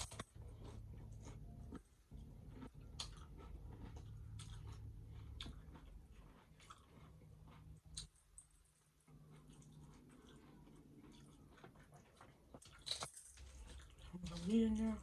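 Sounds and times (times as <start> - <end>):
chewing crispy taco crunches: 0.0 - 15.0
low steady hum: 0.0 - 15.0.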